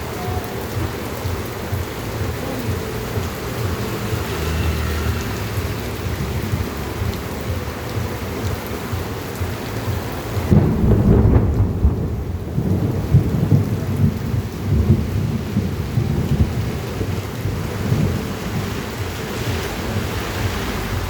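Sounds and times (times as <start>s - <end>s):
heavy rain on street: 0.0s - 21.0s
low uneven rumble: 5.0s - 21.0s.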